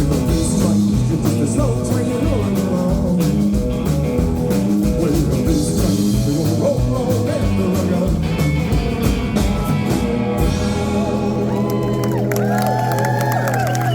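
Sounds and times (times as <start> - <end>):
drums: 0.0 - 13.9
rock and roll band playing: 0.0 - 13.9
crowd whooping: 10.9 - 13.9.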